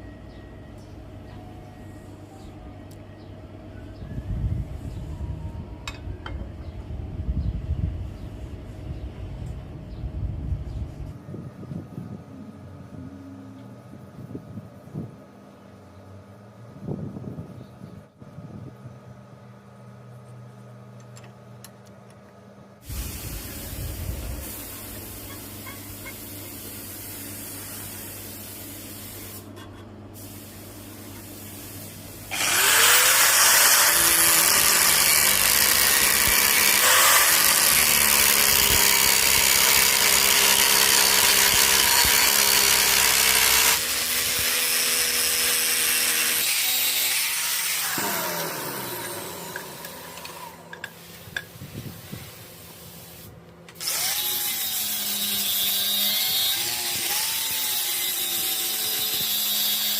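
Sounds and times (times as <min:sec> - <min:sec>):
power tool motor on metal: 0:32.3 - 0:51.2, 0:53.8 - 0:59.9.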